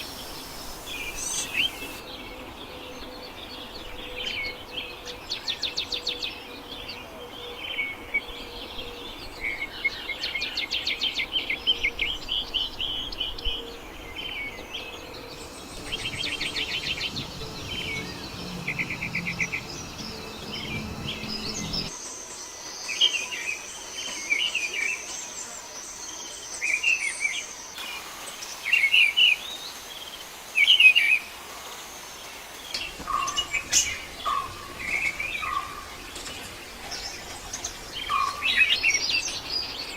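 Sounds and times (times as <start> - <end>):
thin steady high whine: 0.0 - 2.0, 15.1 - 24.2
songbirds singing: 0.0 - 22.0, 32.2 - 39.9.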